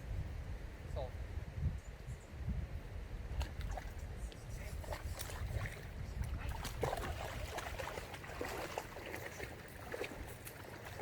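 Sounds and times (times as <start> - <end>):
river water splashing: 3.3 - 11.0.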